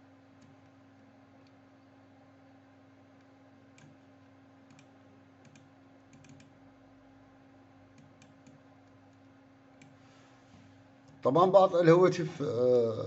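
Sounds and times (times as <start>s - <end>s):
low steady hum: 0.0s - 13.0s
computer keys clicking: 0.4s - 0.7s, 3.2s - 4.0s, 4.6s - 6.6s, 7.9s - 10.0s.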